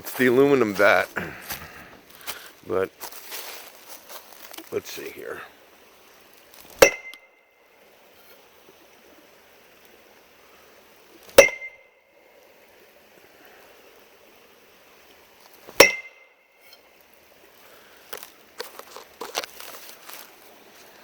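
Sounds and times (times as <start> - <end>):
metal bat striking tree trunk: 6.7 - 7.4, 11.3 - 12.0, 15.7 - 16.4.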